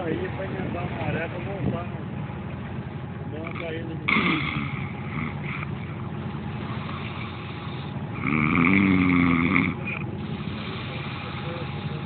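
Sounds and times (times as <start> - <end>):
boat engine running: 0.0 - 12.0
pitched drone: 3.4 - 12.0.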